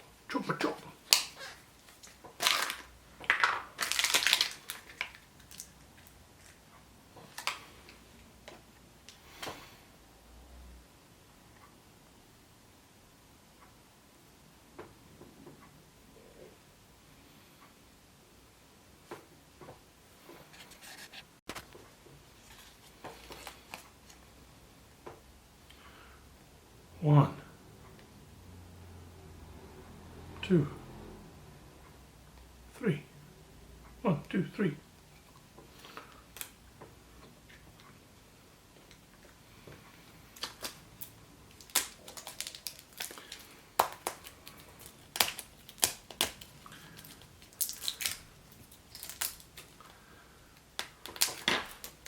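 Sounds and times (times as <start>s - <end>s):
plastic wrapper crinkling: 1.0s - 6.6s, 7.3s - 7.7s, 40.3s - 50.0s, 50.8s - 52.0s.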